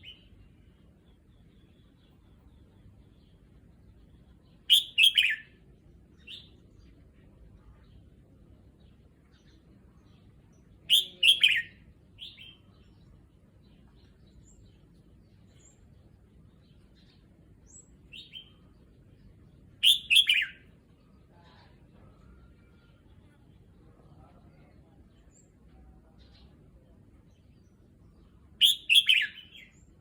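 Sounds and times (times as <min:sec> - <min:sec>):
bird song phrases: 0:00.0 - 0:30.0.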